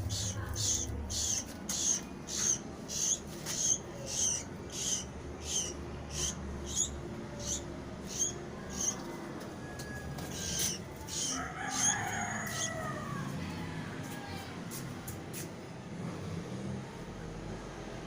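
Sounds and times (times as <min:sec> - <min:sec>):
baby bird chirping: 0:00.0 - 0:09.1, 0:10.2 - 0:13.0.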